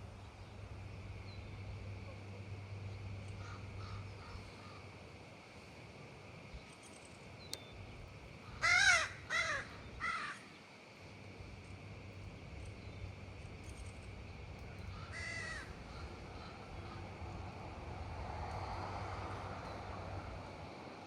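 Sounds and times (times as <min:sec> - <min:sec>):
low background hum: 0:00.0 - 0:21.0
bird calling: 0:03.2 - 0:04.9, 0:08.5 - 0:10.6, 0:12.6 - 0:17.2.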